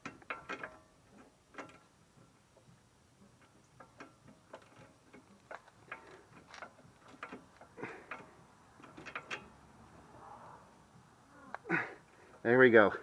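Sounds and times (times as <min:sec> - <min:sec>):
hand ratchet clicking: 0:00.0 - 0:01.9, 0:03.3 - 0:09.6.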